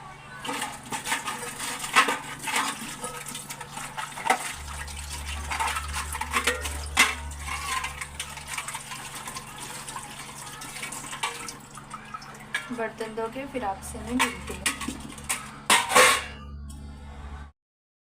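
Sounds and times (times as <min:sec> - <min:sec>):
dishes clinking and knocking: 0:00.4 - 0:12.8, 0:14.1 - 0:16.6
tap water running into sink: 0:01.0 - 0:12.8.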